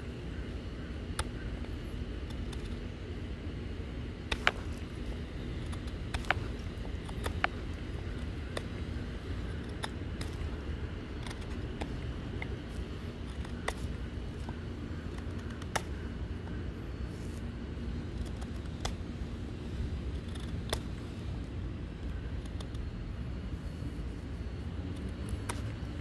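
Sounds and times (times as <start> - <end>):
pocket knife clicks and snips: 20.2 - 21.0.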